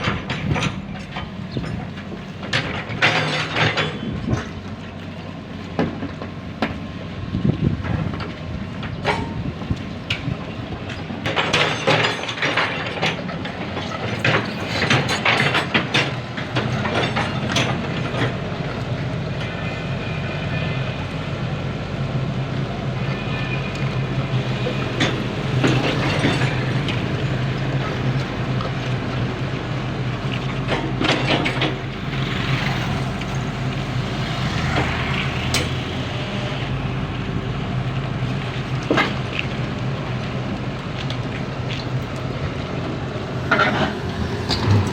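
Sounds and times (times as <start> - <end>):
metal clanks and scrapes: 0.0 - 4.6, 10.9 - 18.4, 24.6 - 27.3, 30.5 - 33.6, 43.4 - 44.9
diesel engine running under load: 0.0 - 44.9.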